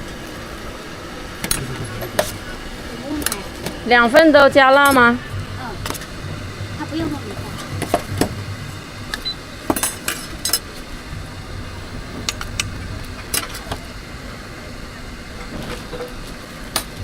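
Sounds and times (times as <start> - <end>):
low background hum: 0.7 - 16.4
utensils clinking against dishes: 9.6 - 10.6.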